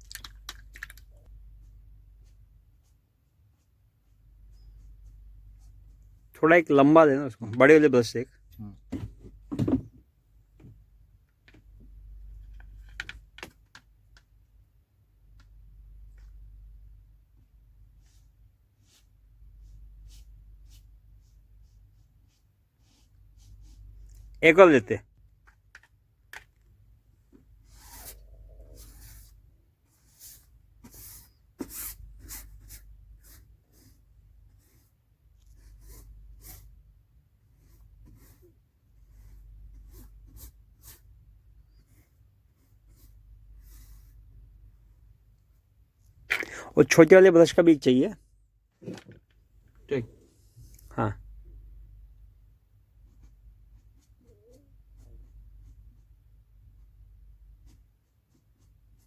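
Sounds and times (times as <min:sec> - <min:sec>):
paintbrush stroking a surface: 0:01.6 - 0:06.0, 0:18.0 - 0:24.3, 0:27.6 - 0:34.0.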